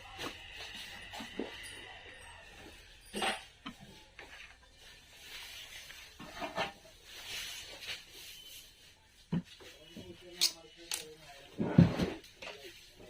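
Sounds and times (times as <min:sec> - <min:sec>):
metal tools tapping circuit board: 0:10.4 - 0:11.2.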